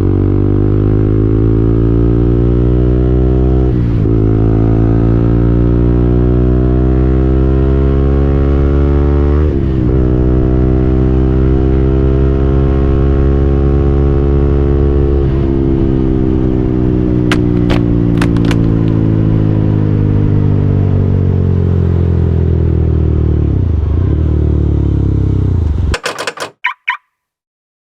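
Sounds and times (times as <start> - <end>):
sharp clicks: 17.3 - 19.0, 26.0 - 27.0.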